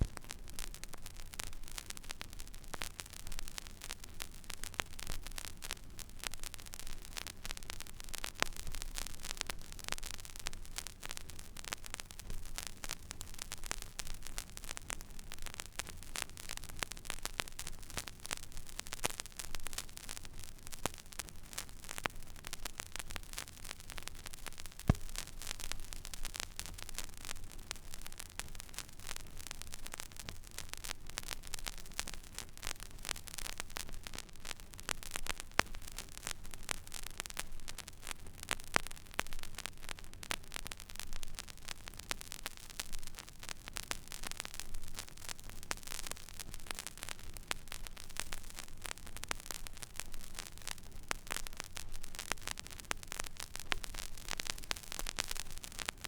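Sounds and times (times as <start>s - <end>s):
vinyl surface crackle: 0.0s - 0.8s, 23.2s - 27.8s, 41.4s - 56.0s
vinyl pops: 0.0s - 4.0s, 21.5s - 32.2s, 43.8s - 56.0s
steady hiss: 24.7s - 27.7s.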